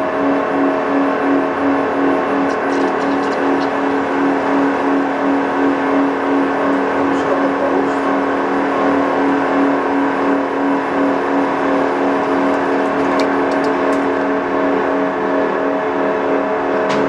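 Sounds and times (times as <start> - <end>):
lathe humming: 2.1 - 15.1.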